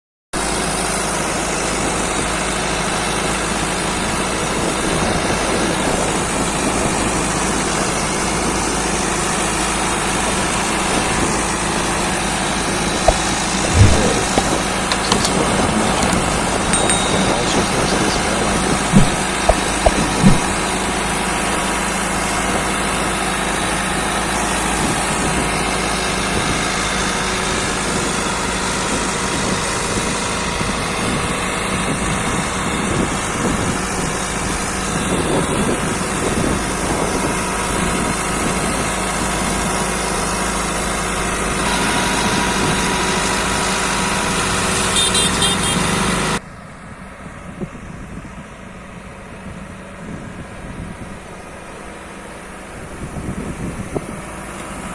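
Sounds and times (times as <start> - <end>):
heavy machine engine running: 0.4 - 47.4
sharp knocks: 13.1 - 17.7, 18.9 - 20.5.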